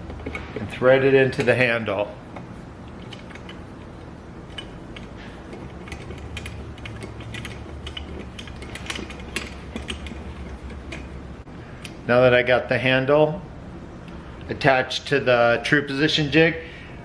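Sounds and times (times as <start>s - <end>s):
light metal scraping: 0.0s - 11.5s.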